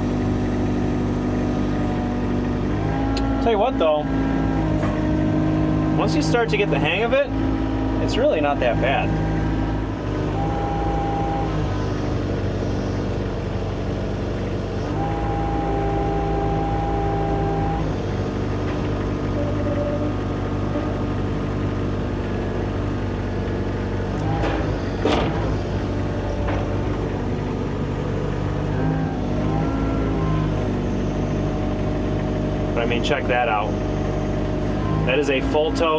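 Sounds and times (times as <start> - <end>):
excavator diesel engine: 0.0 - 35.9
hydraulic whine: 0.0 - 35.9
metal clank: 24.2 - 26.9.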